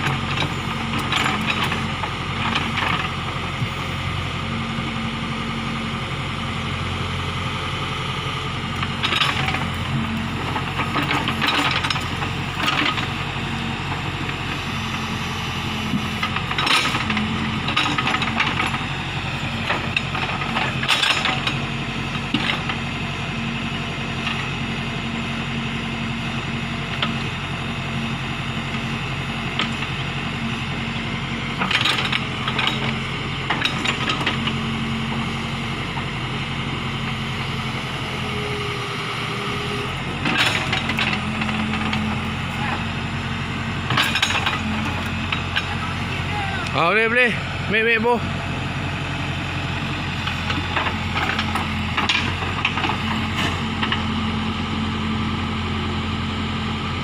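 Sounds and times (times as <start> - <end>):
diesel engine running: 0.0 - 57.0
metallic clanks and knocks: 8.8 - 13.1, 16.2 - 18.8, 19.6 - 21.6, 31.6 - 34.6, 40.2 - 42.8, 43.9 - 45.8, 50.2 - 54.1.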